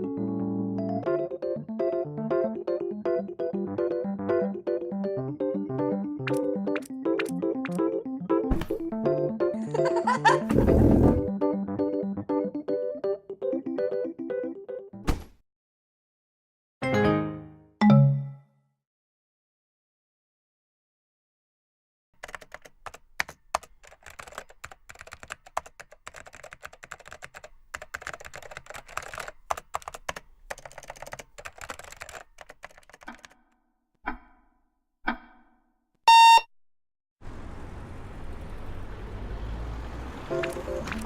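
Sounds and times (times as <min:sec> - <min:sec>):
computer keyboard typing: 0:06.3 - 0:07.8, 0:22.2 - 0:33.4
loud electronic beep: 0:36.1 - 0:36.5.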